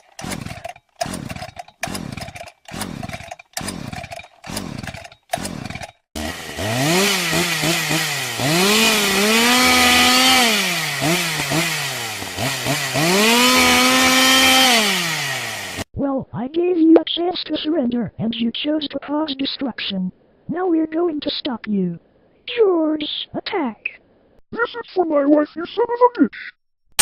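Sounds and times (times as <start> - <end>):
chainsaw engine revving: 0.0 - 15.9
chainsaw pull-start tugs: 0.0 - 15.9.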